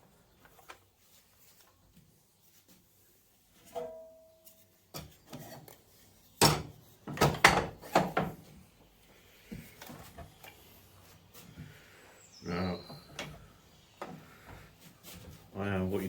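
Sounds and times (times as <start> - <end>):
scrapes and knocks: 2.4 - 8.5.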